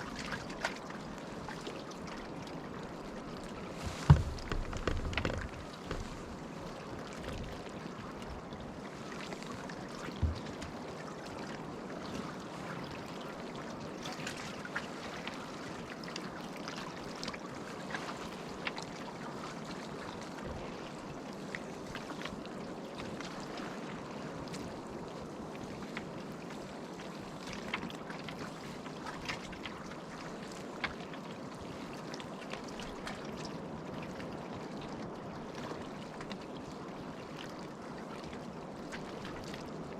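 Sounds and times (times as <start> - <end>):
sea water lapping: 0.0 - 39.9
thump: 3.8 - 6.0.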